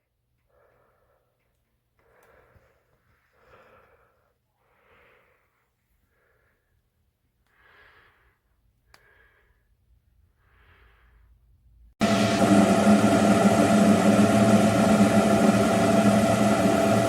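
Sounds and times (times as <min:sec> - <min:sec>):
person breathing faintly: 0:00.4 - 0:11.5.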